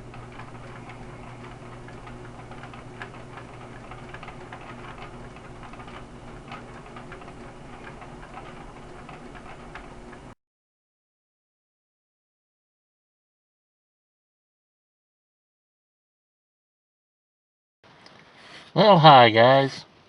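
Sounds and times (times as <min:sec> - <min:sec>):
steady low hum: 0:00.0 - 0:10.4.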